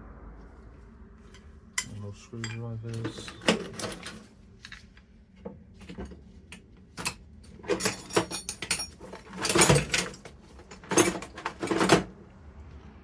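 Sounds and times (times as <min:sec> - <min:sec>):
metal hand tools clattering: 0:01.3 - 0:04.8, 0:05.8 - 0:06.2, 0:07.0 - 0:12.1.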